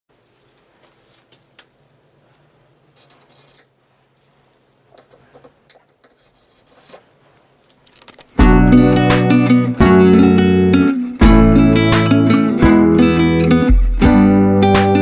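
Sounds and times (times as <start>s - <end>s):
faint scratchy rubbing: 6.1s - 7.6s
strummed acoustic guitar: 8.4s - 15.0s.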